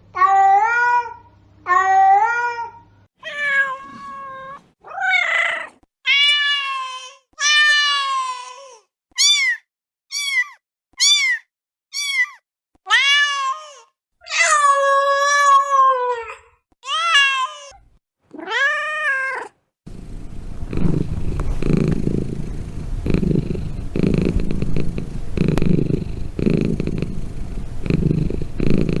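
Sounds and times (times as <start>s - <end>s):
cat meowing: 0.2s - 19.6s
cat purring: 19.9s - 29.0s.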